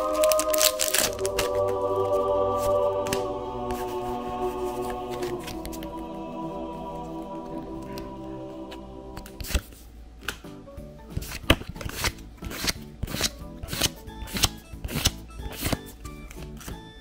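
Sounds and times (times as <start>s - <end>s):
background music: 0.0s - 17.0s
trading cards snapping: 9.2s - 10.5s, 11.2s - 16.8s.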